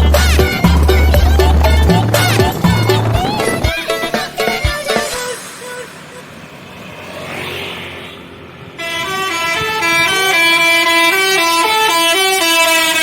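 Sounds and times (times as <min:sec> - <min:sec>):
musical air horn playing a tune: 0:08.8 - 0:13.0.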